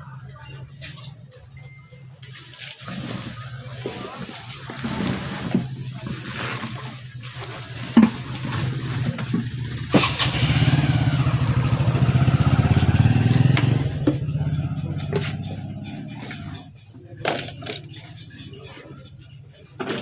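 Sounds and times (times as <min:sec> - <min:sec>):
small engine running: 0:06.2 - 0:16.7.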